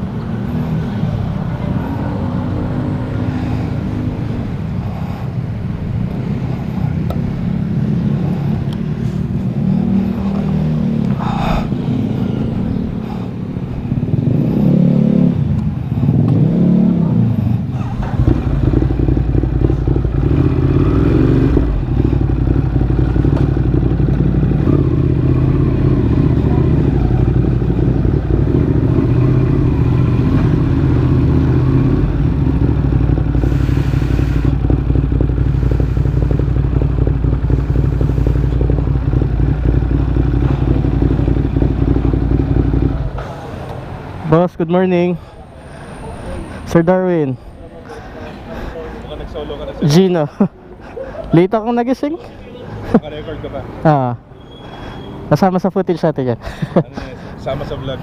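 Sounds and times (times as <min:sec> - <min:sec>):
motorcycle engine revving: 0:00.0 - 0:44.6.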